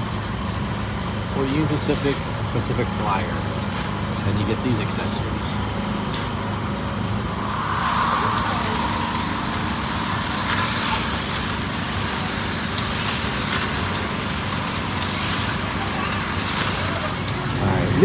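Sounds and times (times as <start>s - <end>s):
low engine hum: 0.0s - 18.0s
outdoor background noise: 0.0s - 18.0s.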